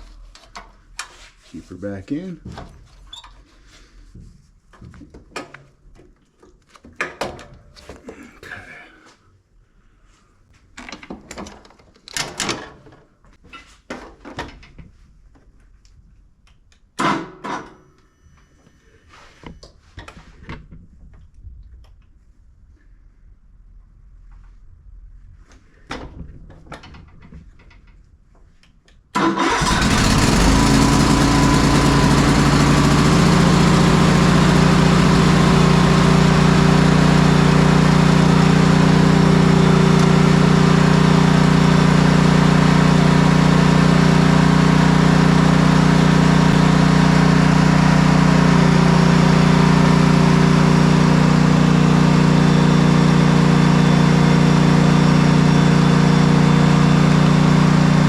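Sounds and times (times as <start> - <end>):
mower engine starting and running: 29.2 - 58.0.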